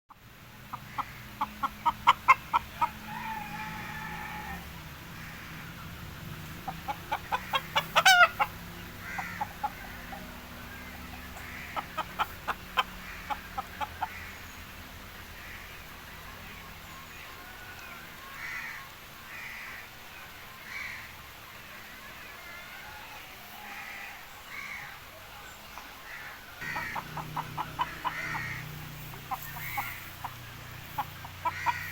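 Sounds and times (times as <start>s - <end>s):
hen cackling: 0.6s - 5.6s, 6.6s - 14.5s, 26.0s - 31.9s.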